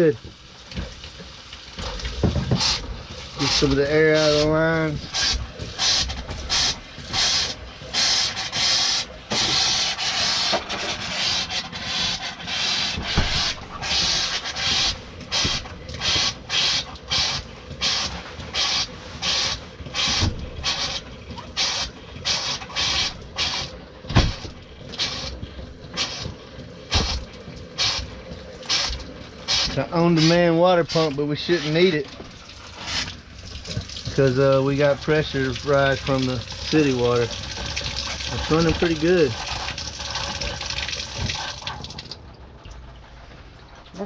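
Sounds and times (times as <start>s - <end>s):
water sputtering from a tap: 0.0s - 44.0s.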